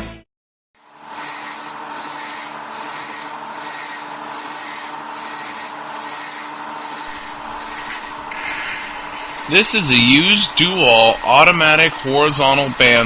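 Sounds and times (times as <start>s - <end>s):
bandsaw cutting steel: 0.8s - 13.0s.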